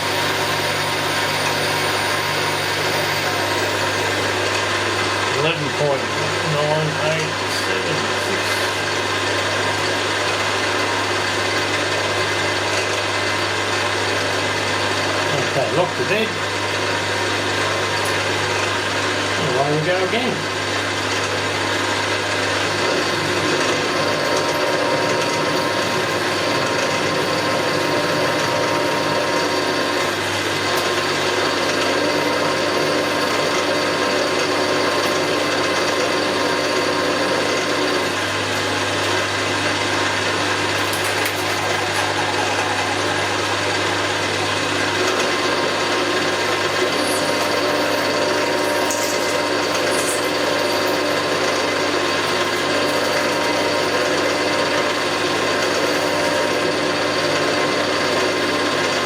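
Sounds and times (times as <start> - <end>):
metal cutting machine: 0.0 - 59.0
motor and gearing hum: 0.0 - 59.0.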